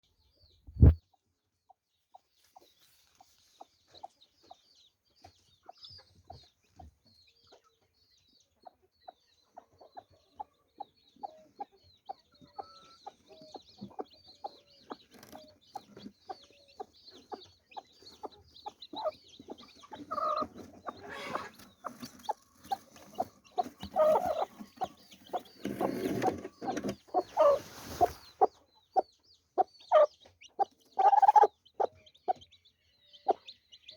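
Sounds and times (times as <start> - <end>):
chicks peeping: 0.2 - 33.9
hen clucking: 8.6 - 33.9.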